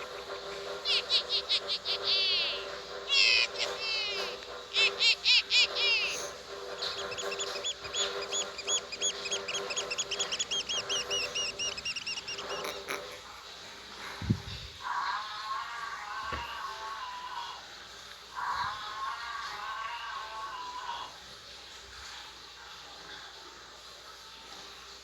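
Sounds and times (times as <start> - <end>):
bird chirping: 0.0 - 2.6, 3.2 - 13.2
repeated high bird notes: 4.8 - 12.8.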